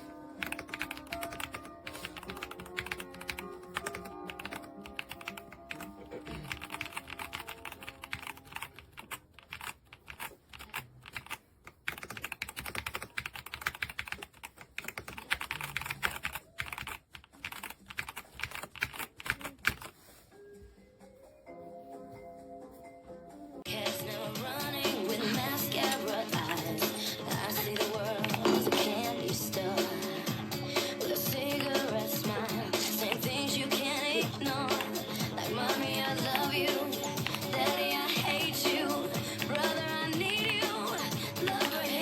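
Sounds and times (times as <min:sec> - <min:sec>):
mechanical keyboard typing: 0:00.4 - 0:19.9, 0:25.8 - 0:29.1, 0:31.1 - 0:32.3, 0:36.1 - 0:42.0.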